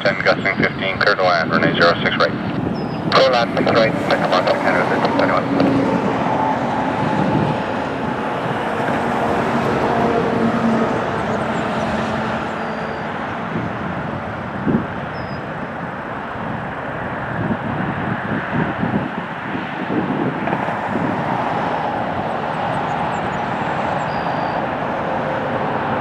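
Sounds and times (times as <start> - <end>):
jet engines roaring: 0.0 - 26.0.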